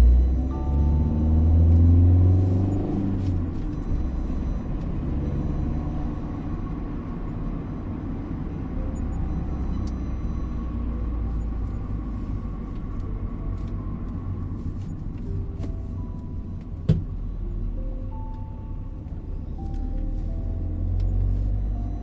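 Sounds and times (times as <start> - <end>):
soft gentle melody: 0.0 - 5.8, 8.0 - 22.0
car driving rumble: 0.0 - 22.0.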